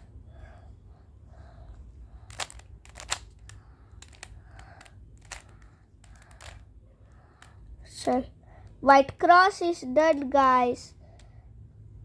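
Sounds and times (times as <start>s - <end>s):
plastic puzzle cube clicking: 2.2s - 6.7s.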